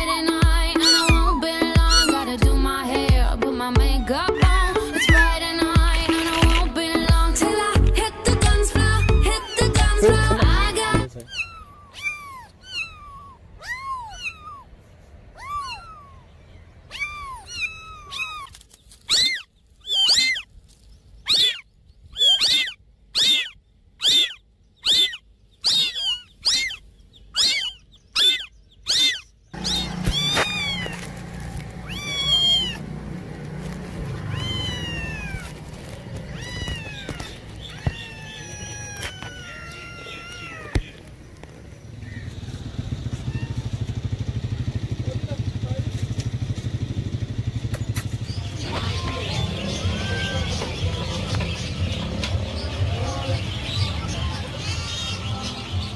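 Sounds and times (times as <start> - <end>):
cats meowing: 0.0 - 2.8, 3.8 - 6.7, 8.8 - 20.5, 21.3 - 21.6, 22.2 - 26.8, 27.4 - 32.9, 33.9 - 41.1, 43.1 - 44.2, 48.6 - 55.2.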